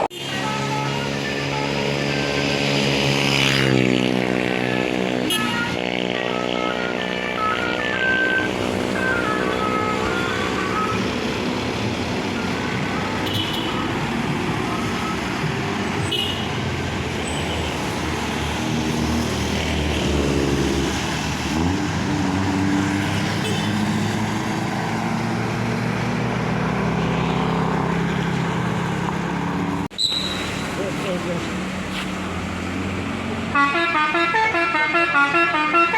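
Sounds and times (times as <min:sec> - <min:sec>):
multi-tone bus horn tune: 0:00.0 - 0:16.7, 0:23.3 - 0:23.8, 0:33.5 - 0:35.9
bus diesel engines: 0:00.0 - 0:35.9
road traffic: 0:00.0 - 0:35.9.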